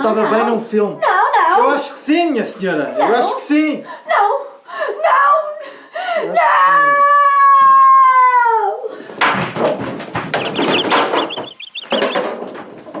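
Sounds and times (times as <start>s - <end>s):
long high falling cry: 6.4s - 8.9s
knocks and bangs: 9.2s - 13.0s.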